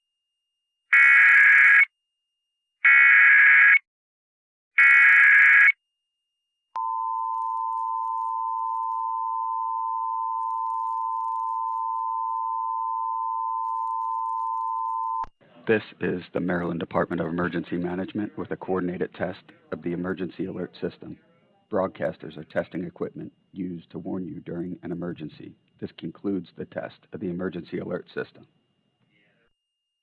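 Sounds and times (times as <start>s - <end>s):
steady attention tone: 6.8s - 15.3s.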